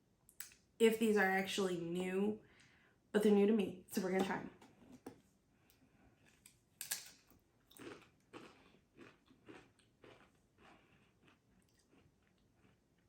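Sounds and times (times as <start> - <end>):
person chewing crisps: 6.2 - 13.0.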